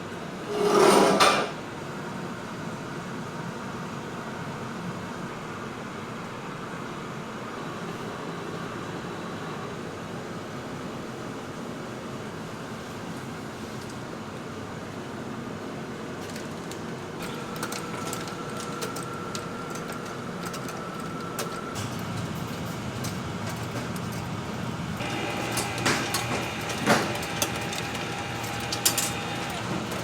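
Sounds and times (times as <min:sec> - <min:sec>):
kitchen machinery humming: 0:16.6 - 0:30.0
sharp clicks and clacks: 0:25.0 - 0:30.0.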